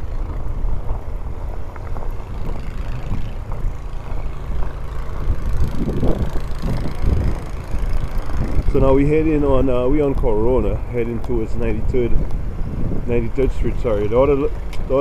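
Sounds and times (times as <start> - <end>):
city street traffic rumble: 0.0 - 15.0.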